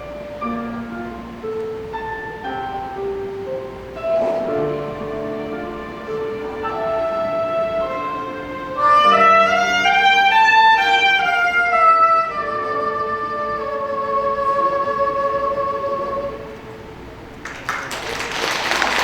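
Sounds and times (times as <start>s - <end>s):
musical accompaniment: 0.0s - 17.5s
soprano saxophone melody: 4.0s - 16.7s.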